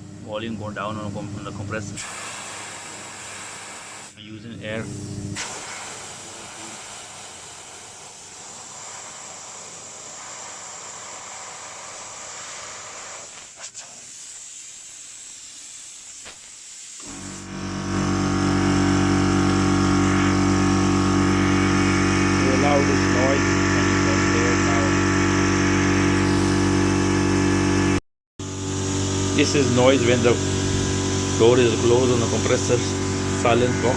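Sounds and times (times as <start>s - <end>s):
air compressor running: 0.0s - 33.9s
compressed air hissing: 2.0s - 4.2s, 5.4s - 17.5s, 28.4s - 33.9s.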